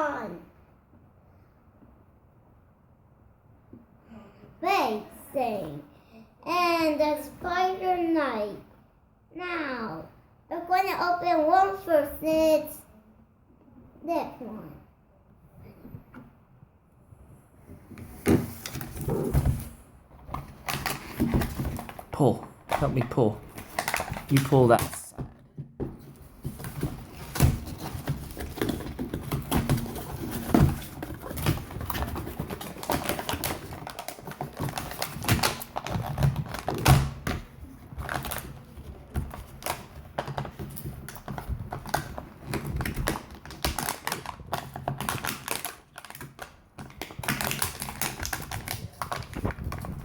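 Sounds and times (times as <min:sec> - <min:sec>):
toy packaging being opened: 0:20.4 - 0:25.2, 0:26.4 - 0:37.0, 0:38.0 - 0:50.0.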